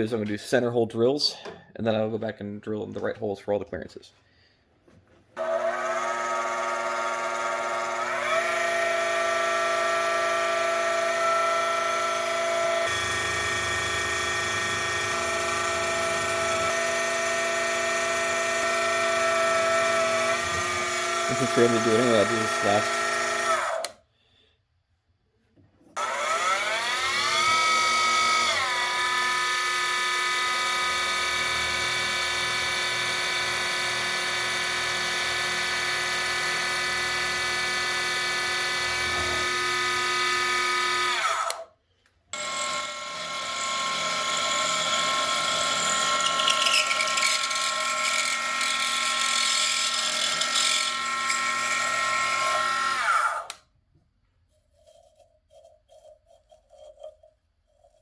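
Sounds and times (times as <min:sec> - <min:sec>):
mill spindle motor whine: 0:05.4 - 0:23.9, 0:26.0 - 0:41.6, 0:42.4 - 0:53.6
rough metal cutting noise: 0:05.4 - 0:24.0, 0:26.0 - 0:41.7, 0:42.4 - 0:53.6.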